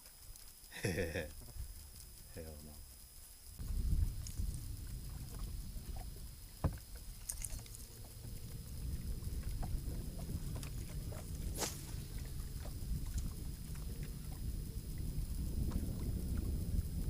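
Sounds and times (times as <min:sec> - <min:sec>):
boat engine rumble: 0:03.6 - 0:17.0.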